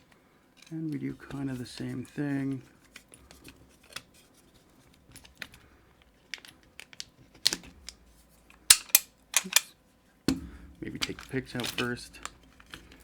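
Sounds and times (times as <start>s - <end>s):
plastic case clicking and clacking: 8.7s - 9.7s, 10.3s - 13.0s.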